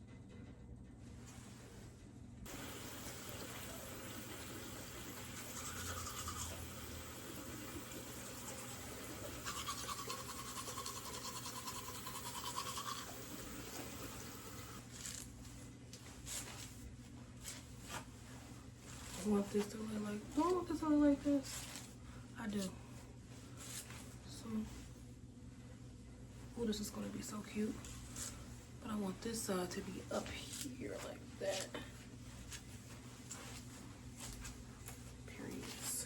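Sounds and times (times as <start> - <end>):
electric appliance motor running: 2.5 - 14.9.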